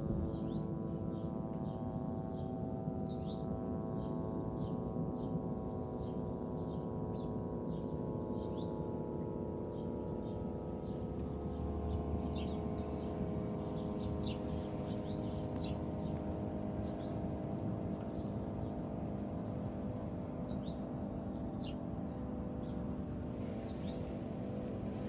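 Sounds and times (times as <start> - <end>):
held ringing tones drone: 0.0 - 25.0
birds chirping: 9.7 - 19.2, 19.8 - 24.2.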